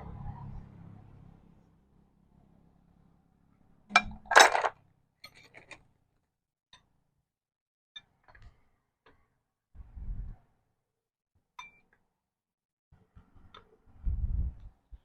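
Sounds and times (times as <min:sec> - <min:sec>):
sharp clicks and clinks: 0:03.9 - 0:04.7, 0:05.3 - 0:05.8.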